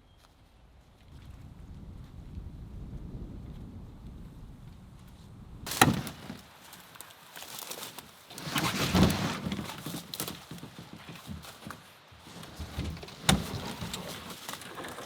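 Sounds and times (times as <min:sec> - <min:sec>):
wind rumble on microphone: 0:00.4 - 0:05.7
scraping and clattering knocks: 0:05.7 - 0:15.0.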